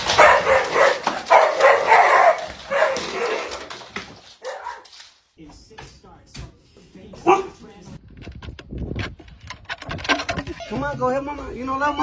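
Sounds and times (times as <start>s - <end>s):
dog barking: 0.0s - 5.0s, 7.2s - 7.6s.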